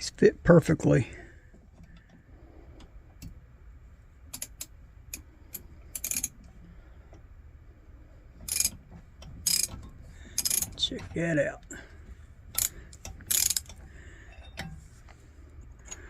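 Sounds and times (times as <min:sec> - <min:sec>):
metal tool clicks and clinks: 0:12.6 - 0:14.7.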